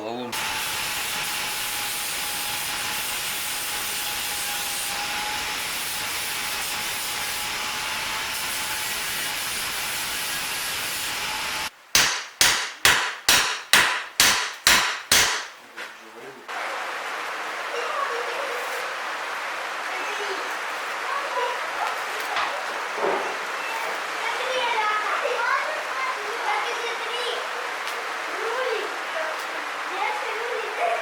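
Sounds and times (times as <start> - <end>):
hissing power tool with whine: 0.4 - 11.7
hammer blows on metal: 12.0 - 15.6.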